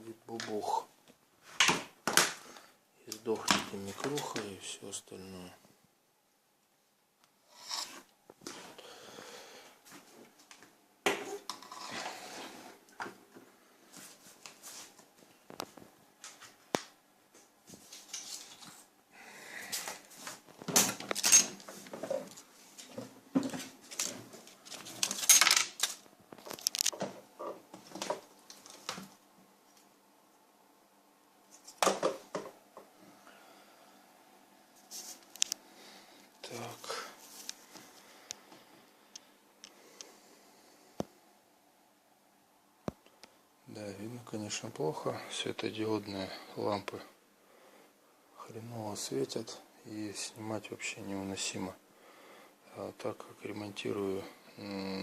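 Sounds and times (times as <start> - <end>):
rustling: 34.7 - 35.6, 36.4 - 38.9.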